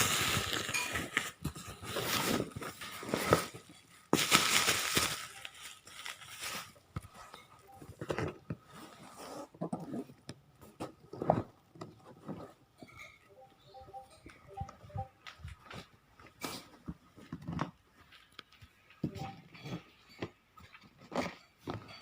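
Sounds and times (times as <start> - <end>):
handling rustling: 0.0 - 9.6.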